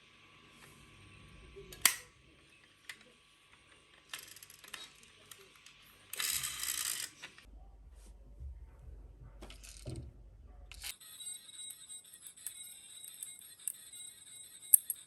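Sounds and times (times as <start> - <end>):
toy car click: 4.0 - 7.4, 10.7 - 15.0
toy wheels rattling on a slope: 4.0 - 7.4, 10.7 - 15.0.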